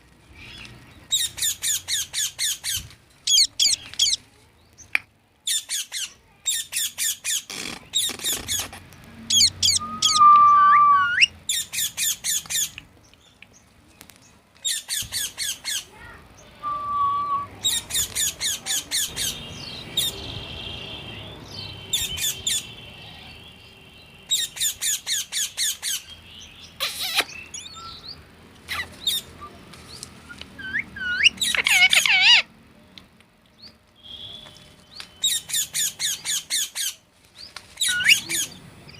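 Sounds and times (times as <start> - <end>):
parrot screeching: 9.3 - 12.2, 26.8 - 27.3, 30.6 - 32.5, 37.8 - 38.5
parrot whistles: 9.4 - 11.3, 16.6 - 17.6, 30.6 - 32.4, 37.8 - 38.2.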